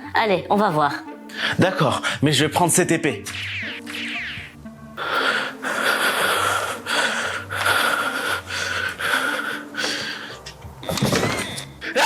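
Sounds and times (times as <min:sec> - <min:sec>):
person making raspy wheezing breaths: 0:03.3 - 0:10.4, 0:11.8 - 0:12.0.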